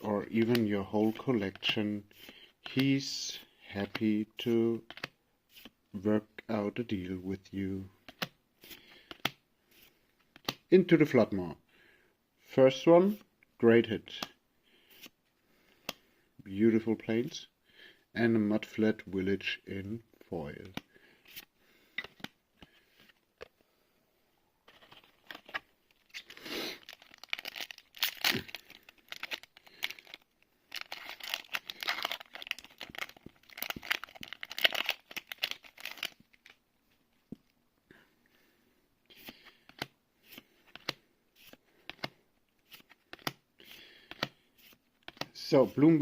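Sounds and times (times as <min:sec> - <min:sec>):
foil wrapper tearing and crinkling: 0:26.0 - 0:36.6.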